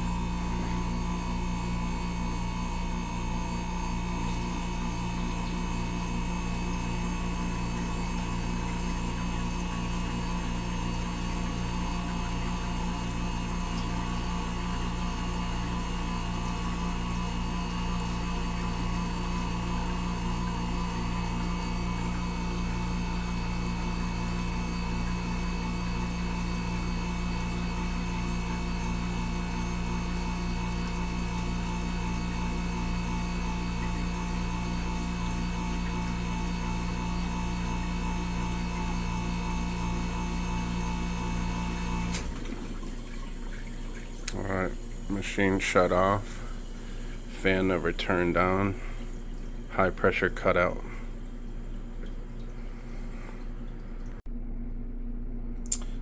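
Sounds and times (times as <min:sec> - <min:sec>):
ice machine compressor humming: 0:00.0 - 0:54.3
water pump circulating water: 0:00.0 - 0:54.3.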